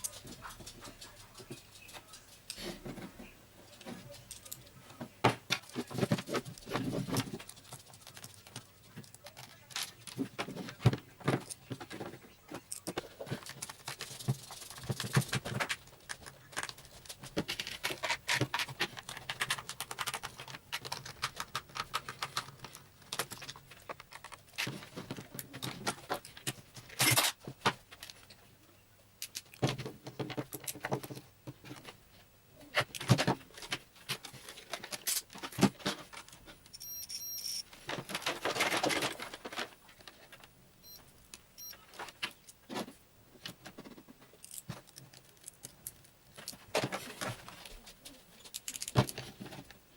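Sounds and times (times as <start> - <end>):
plastic and metal parts clicking: 5.5 - 28.3, 48.4 - 49.8.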